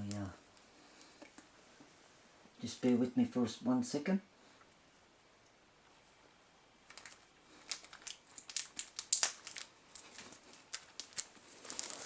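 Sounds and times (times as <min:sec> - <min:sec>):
plastic packet crinkling: 0:06.9 - 0:12.0.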